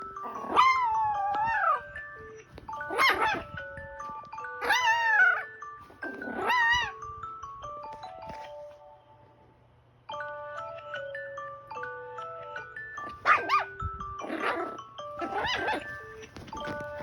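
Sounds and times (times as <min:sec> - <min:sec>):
puppy yelping: 0:00.0 - 0:02.0, 0:02.7 - 0:03.6, 0:04.6 - 0:07.0, 0:13.1 - 0:16.2.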